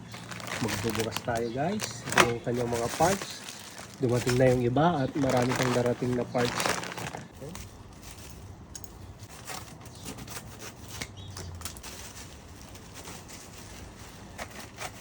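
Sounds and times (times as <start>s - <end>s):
packaging rustling: 0.0s - 8.3s.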